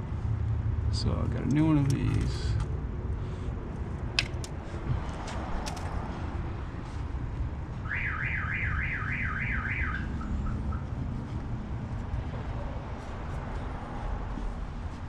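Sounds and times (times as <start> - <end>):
steady low rumble: 0.0 - 8.0, 10.0 - 15.0
electronic warbling alarm: 7.9 - 10.8.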